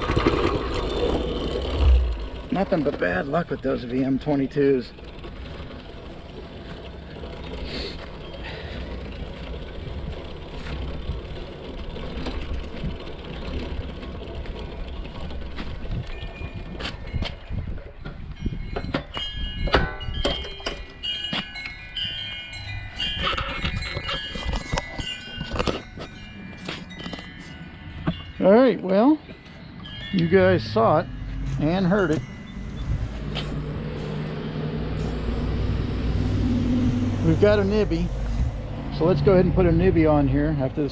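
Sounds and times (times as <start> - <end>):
small engine running rough: 0.0 - 18.2, 29.4 - 40.9
metallic chime-like ringing: 16.0 - 35.6.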